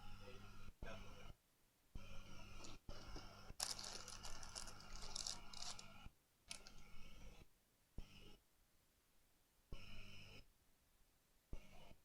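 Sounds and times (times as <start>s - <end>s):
low electrical hum: 0.0s - 12.0s
tools clicking and scraping: 3.6s - 5.9s, 6.5s - 6.8s.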